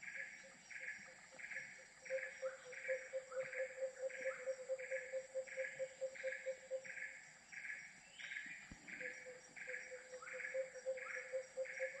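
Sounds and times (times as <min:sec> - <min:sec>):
insects chirping: 0:00.0 - 0:12.0.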